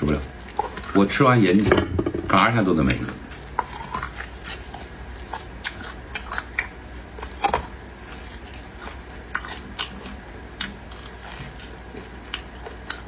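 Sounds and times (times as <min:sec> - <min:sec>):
person eating wet clicks: 0:03.2 - 0:13.0.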